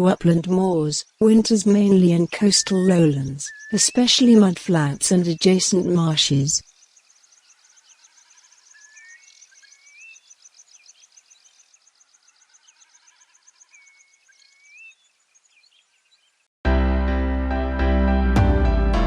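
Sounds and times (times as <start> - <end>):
bird rising whistled call: 3.5 - 3.8
faint insect trill: 5.6 - 16.4.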